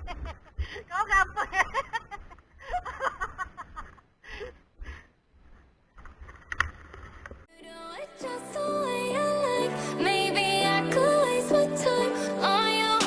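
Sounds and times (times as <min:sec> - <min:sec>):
music: 0:07.5 - 0:13.0.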